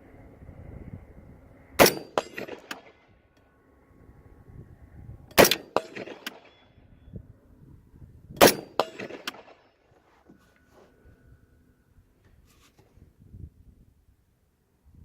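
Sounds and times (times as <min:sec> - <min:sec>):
rifle shots: 0:01.8 - 0:03.0, 0:05.4 - 0:06.7, 0:08.4 - 0:09.7.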